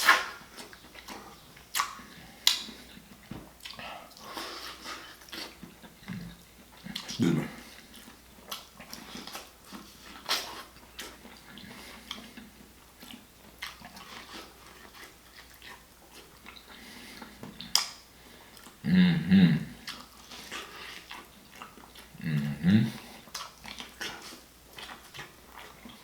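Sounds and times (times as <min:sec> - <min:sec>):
faint chewing: 0:00.0 - 0:26.0
hummed vocal sounds: 0:18.8 - 0:19.8, 0:22.2 - 0:23.1.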